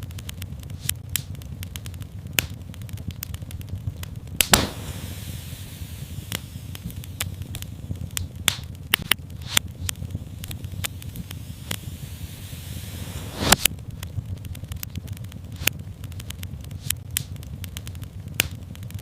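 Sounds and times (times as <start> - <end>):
fireplace fire crackling: 0.0 - 19.0
loud pop: 4.4 - 7.4
short hiss: 4.5 - 7.4, 10.4 - 13.7.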